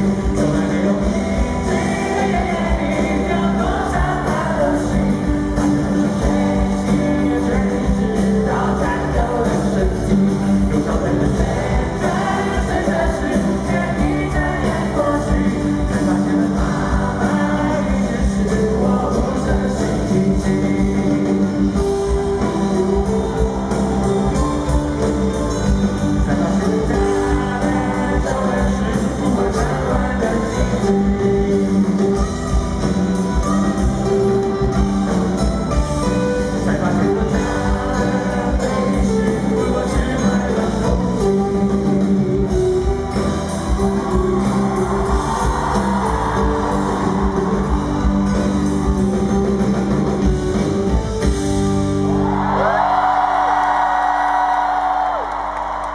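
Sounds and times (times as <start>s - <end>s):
person singing: 0.0s - 25.4s, 26.1s - 32.4s, 36.3s - 48.5s
rock music with guitar: 0.0s - 55.9s.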